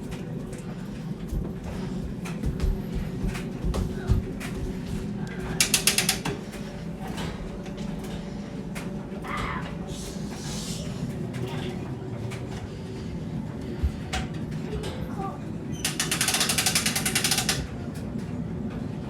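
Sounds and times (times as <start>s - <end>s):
sharp mechanical clicks: 5.6s - 6.3s, 15.8s - 17.7s.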